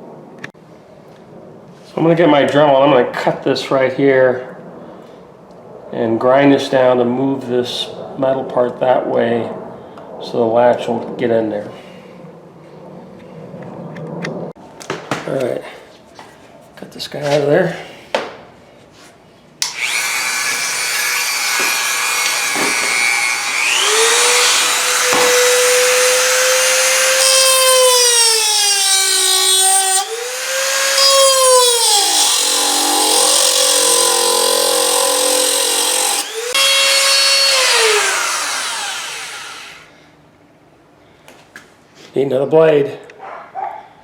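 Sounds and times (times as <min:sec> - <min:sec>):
rotary tool cutting metal: 0:19.6 - 0:39.9.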